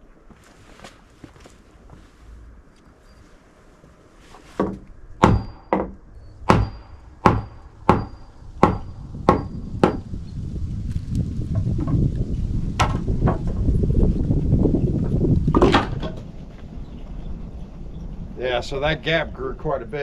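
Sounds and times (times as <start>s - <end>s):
sharp blows on wooden board: 4.6s - 10.1s.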